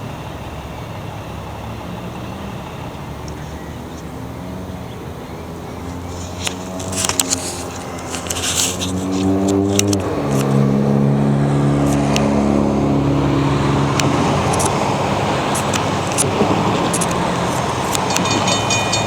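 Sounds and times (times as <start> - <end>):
vehicle engine humming: 0.0 - 19.0
light clicks: 5.8 - 10.6, 13.8 - 19.0.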